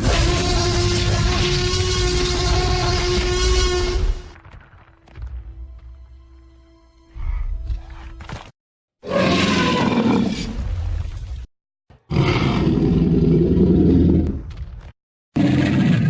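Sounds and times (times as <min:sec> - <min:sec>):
dinosaur roars: 0:12.1 - 0:14.4.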